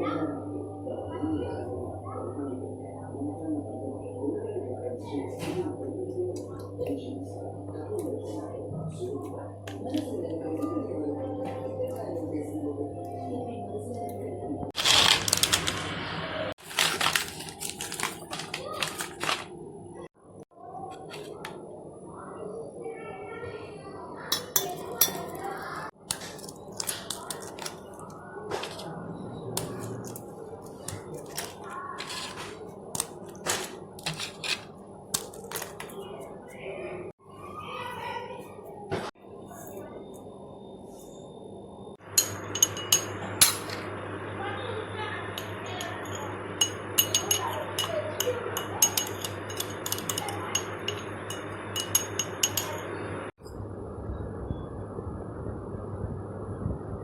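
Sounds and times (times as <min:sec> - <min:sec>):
clicks and cracks of food handling: 0:16.6 - 0:19.5, 0:26.0 - 0:28.8, 0:29.6 - 0:36.0
steady low hum: 0:24.0 - 0:57.0
utensil clinking on glass dish: 0:42.2 - 0:43.8, 0:45.4 - 0:52.9.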